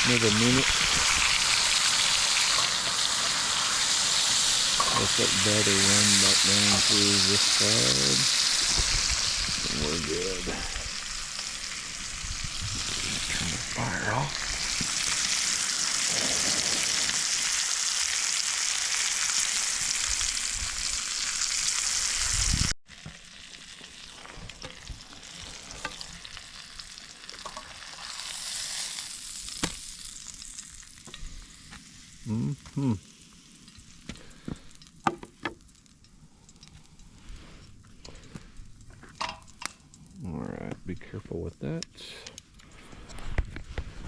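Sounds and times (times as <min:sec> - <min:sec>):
meat sizzling in a skillet: 0:00.0 - 0:35.0.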